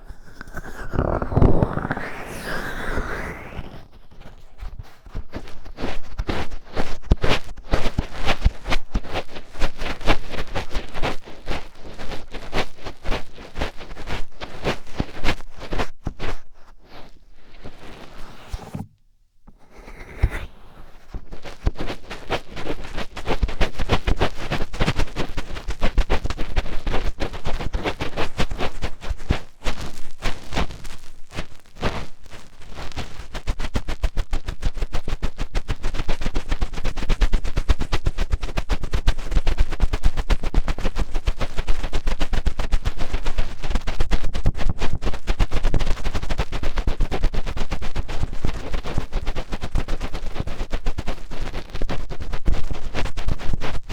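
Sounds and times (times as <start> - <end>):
fingertips scratching in ear: 0.0 - 24.5.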